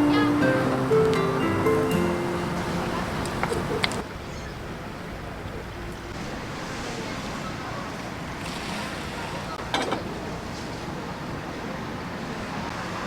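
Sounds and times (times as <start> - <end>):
sea waves: 0.0 - 4.0.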